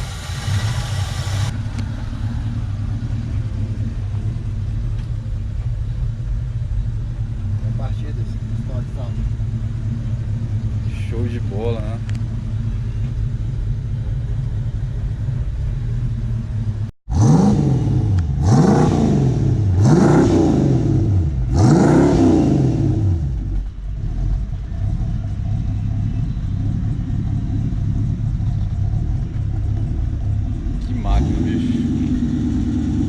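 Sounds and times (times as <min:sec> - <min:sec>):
engine revving: 0:00.0 - 0:03.5, 0:17.1 - 0:33.0
pickup truck engine idling: 0:00.0 - 0:16.9, 0:23.3 - 0:33.0.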